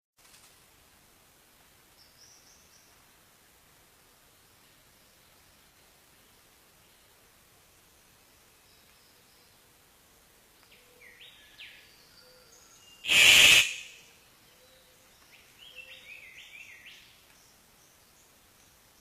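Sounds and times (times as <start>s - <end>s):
bird chirping: 10.6s - 18.4s
harsh bird call burst: 13.0s - 14.0s.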